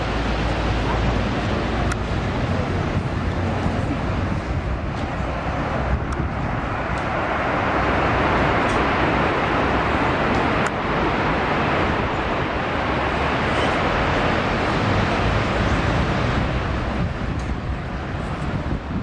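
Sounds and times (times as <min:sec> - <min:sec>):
road traffic: 0:00.0 - 0:19.0.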